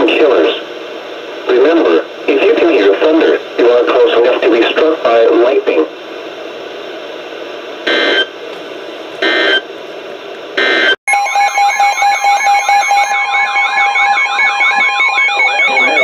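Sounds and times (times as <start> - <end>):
radio static: 1.4 - 6.0, 7.9 - 8.3, 14.7 - 16.0
short electronic data screeches: 7.9 - 8.3, 9.2 - 9.6
warbling electronic alert alarm: 7.9 - 8.3, 9.2 - 9.6, 10.6 - 16.0.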